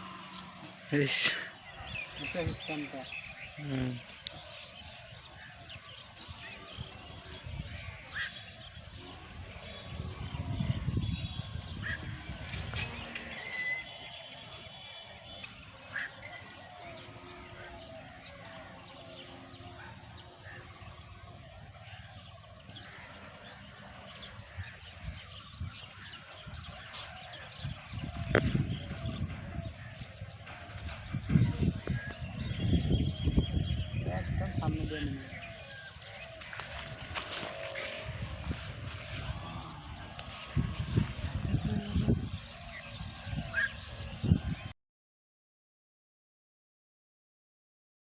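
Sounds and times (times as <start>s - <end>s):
short bird calls: 0.0s - 31.1s
low rumble: 36.4s - 44.6s.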